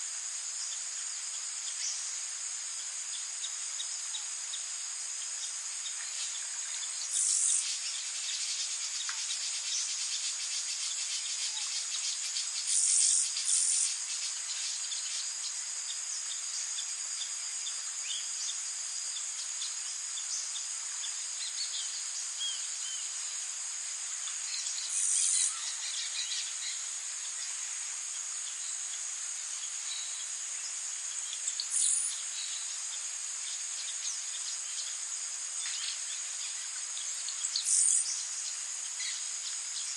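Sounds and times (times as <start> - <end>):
high-pitched insect chorus: 0.0 - 39.9
loud insect buzzes: 10.1 - 14.8.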